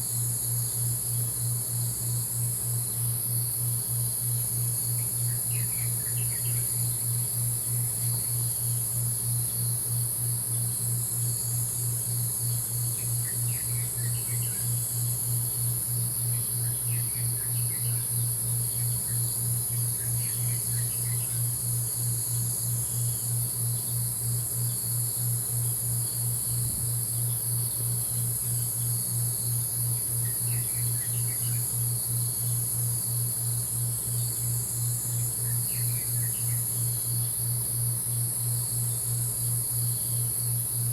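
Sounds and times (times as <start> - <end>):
crickets trilling: 0.0 - 40.9
low pulsing hum: 0.0 - 40.9.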